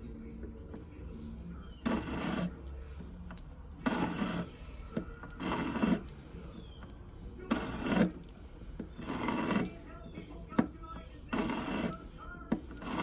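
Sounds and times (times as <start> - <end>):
metal file rasping on ring: 1.7 - 2.9, 3.8 - 10.2, 11.2 - 13.0.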